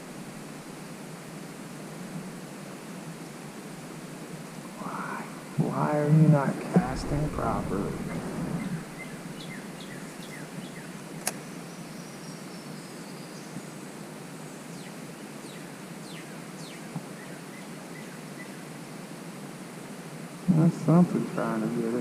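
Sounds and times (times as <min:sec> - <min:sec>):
steady hiss of river: 0:00.0 - 0:22.0
small birds chirping: 0:07.6 - 0:13.8.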